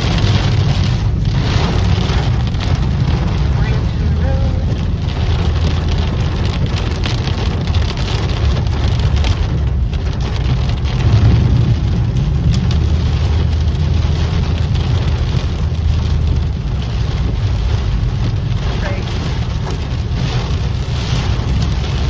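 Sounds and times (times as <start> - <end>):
deep thunder rumble: 0.0 - 22.0
heavy rain pouring: 0.0 - 22.0.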